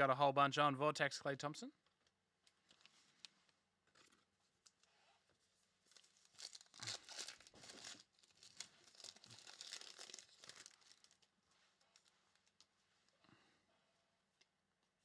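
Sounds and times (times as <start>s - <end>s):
wrapper tearing and crinkling: 5.9s - 11.3s.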